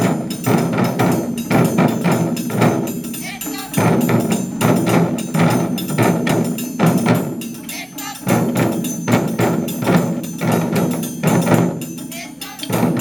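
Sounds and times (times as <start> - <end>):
taiko drums playing: 0.0 - 13.0.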